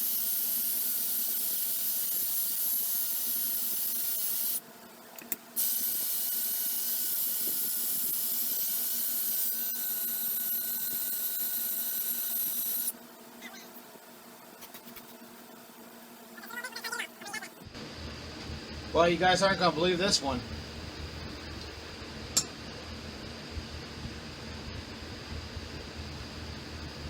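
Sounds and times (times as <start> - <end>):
electric drill on metal: 0.0 - 4.6, 5.6 - 13.0.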